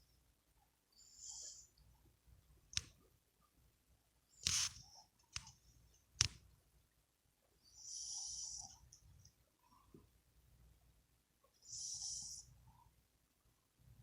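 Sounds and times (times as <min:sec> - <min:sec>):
dog snoring breath: 0:07.7 - 0:08.8, 0:11.6 - 0:12.6.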